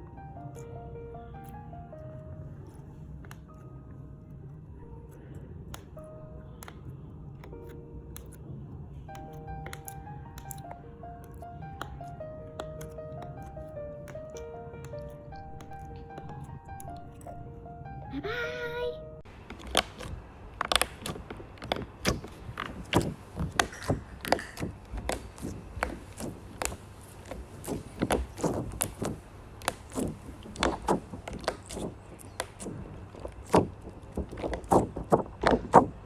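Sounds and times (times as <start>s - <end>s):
slime squeezed with wet pops: 9.1s - 17.4s, 19.6s - 36.0s.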